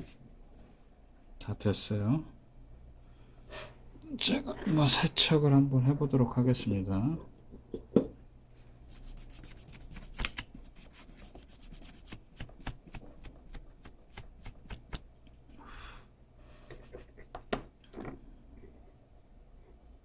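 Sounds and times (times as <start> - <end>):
brush scraping circuit board: 8.7 - 12.2.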